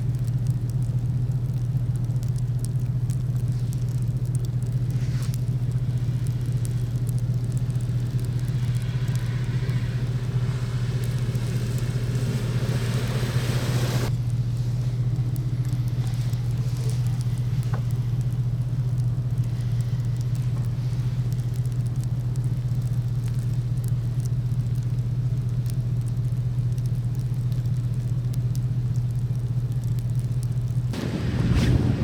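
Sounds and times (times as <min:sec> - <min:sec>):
light ticks: 0:00.0 - 0:13.2, 0:15.0 - 0:31.0
vehicle driving drone: 0:02.3 - 0:21.8, 0:31.0 - 0:32.0
rushing noise: 0:04.9 - 0:14.1, 0:31.0 - 0:32.0.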